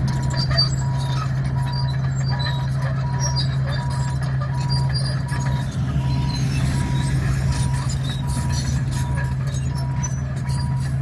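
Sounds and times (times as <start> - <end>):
bulldozer diesel engine running: 0.0 - 11.0
tracks clanking and crackling: 0.0 - 11.0
backup alarm beeping: 3.8 - 10.8.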